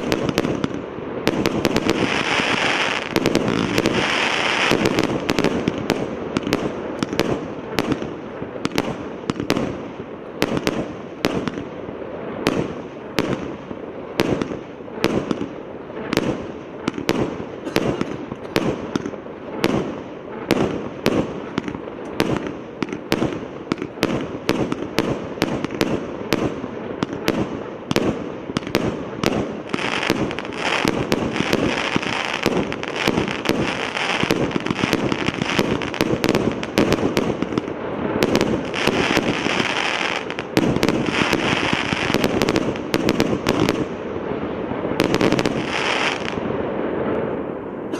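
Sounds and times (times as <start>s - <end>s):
dense firework crackling: 0.0s - 47.9s
firework battery firing shots: 14.2s - 43.9s.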